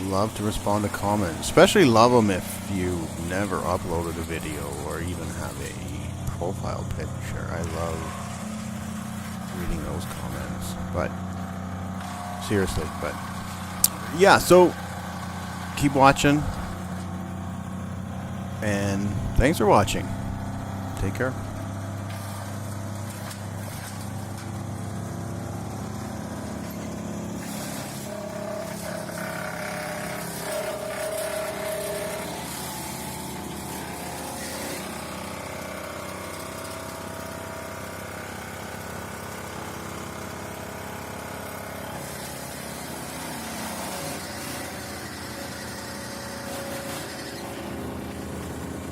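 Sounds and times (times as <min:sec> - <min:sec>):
high whine: 0:00.0 - 0:36.7
wood chipper engine running: 0:00.0 - 0:48.9.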